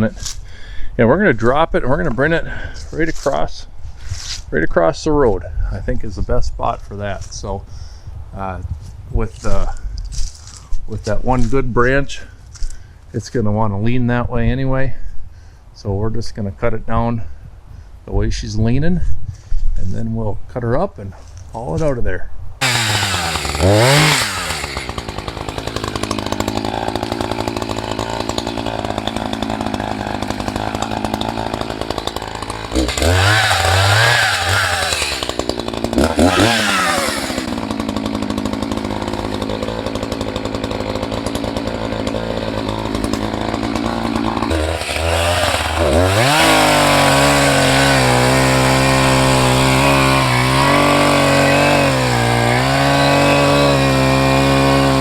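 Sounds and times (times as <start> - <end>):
chainsaw idling and revving: 22.6 - 55.0.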